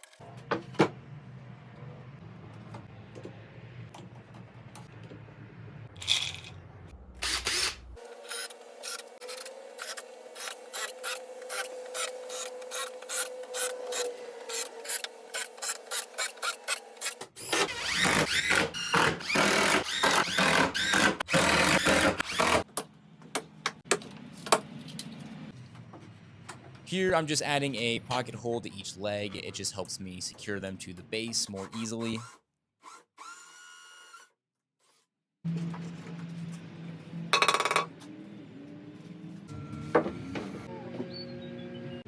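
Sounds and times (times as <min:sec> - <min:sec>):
power drill on plywood: 0:07.2 - 0:22.7, 0:32.1 - 0:34.3.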